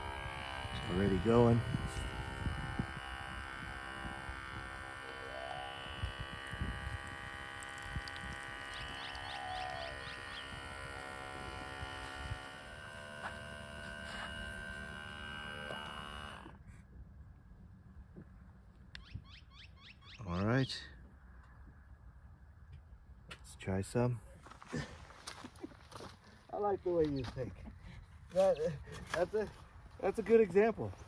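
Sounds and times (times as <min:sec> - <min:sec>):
espresso machine pump buzzing: 0:00.0 - 0:16.6.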